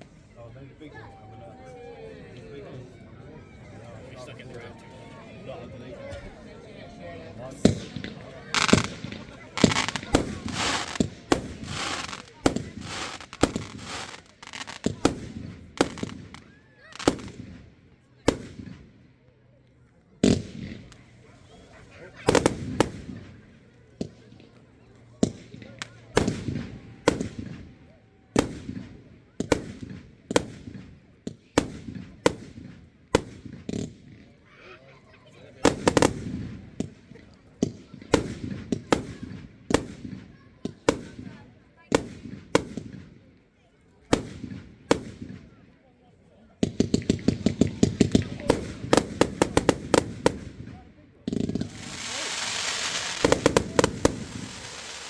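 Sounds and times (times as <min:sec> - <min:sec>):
fireworks bangs with echo: 0:07.4 - 0:19.0, 0:20.2 - 0:21.1, 0:22.2 - 0:24.4, 0:25.2 - 0:27.8, 0:28.4 - 0:34.3, 0:35.6 - 0:43.2, 0:44.1 - 0:45.6, 0:46.6 - 0:55.0
fireworks crackle and fizzing hiss: 0:07.5 - 0:17.7, 0:22.3 - 0:23.4, 0:46.7 - 0:50.7, 0:51.3 - 0:55.0
small firework pops: 0:07.6 - 0:19.0, 0:20.2 - 0:21.2, 0:22.2 - 0:27.7, 0:28.4 - 0:34.4, 0:35.6 - 0:43.2, 0:44.1 - 0:45.6, 0:46.6 - 0:55.0.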